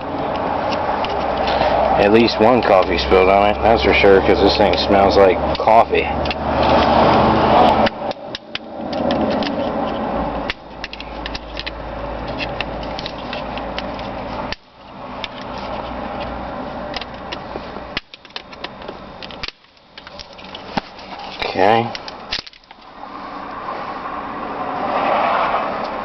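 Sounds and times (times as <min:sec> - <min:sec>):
plastic scraping and rubbing: 0:00.0 - 0:22.9
handling rumble: 0:00.0 - 0:24.9
plastic clicks and snaps: 0:16.9 - 0:20.8.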